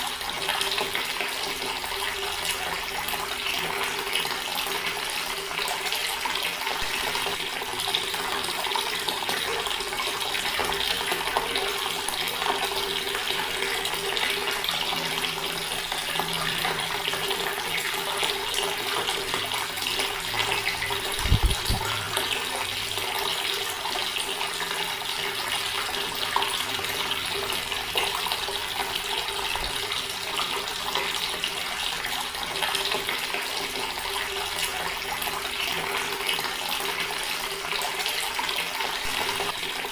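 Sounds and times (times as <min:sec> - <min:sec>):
water running from a tap: 0:00.0 - 0:39.9.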